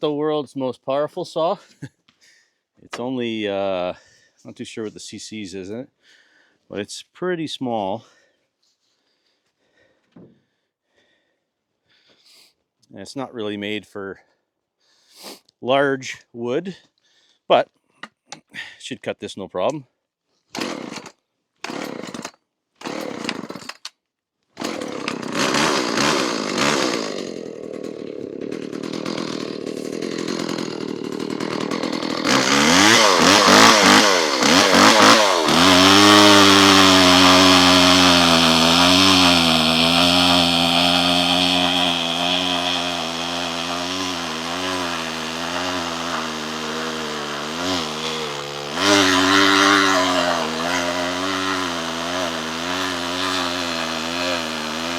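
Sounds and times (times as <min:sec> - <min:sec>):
chainsaw cutting log: 0:20.6 - 0:23.8, 0:24.6 - 0:54.9.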